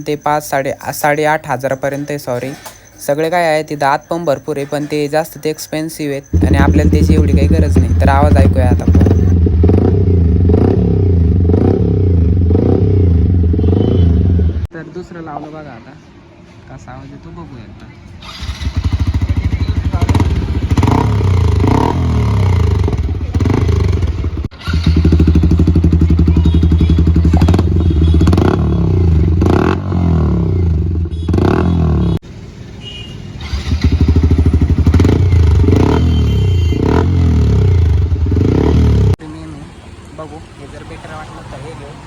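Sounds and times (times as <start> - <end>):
motorcycle engine revving: 6.3 - 14.7, 18.2 - 32.2, 33.4 - 39.2.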